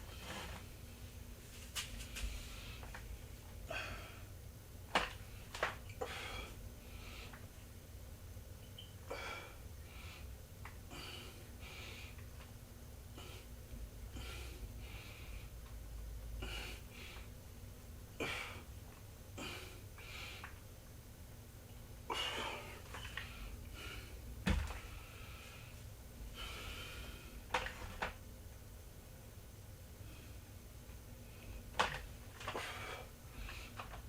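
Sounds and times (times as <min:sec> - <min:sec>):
person breathing hard: 0:03.6 - 0:04.3, 0:06.0 - 0:07.4, 0:09.1 - 0:10.3, 0:10.9 - 0:12.2, 0:13.1 - 0:15.6, 0:16.4 - 0:17.3, 0:24.8 - 0:27.4, 0:32.5 - 0:33.8.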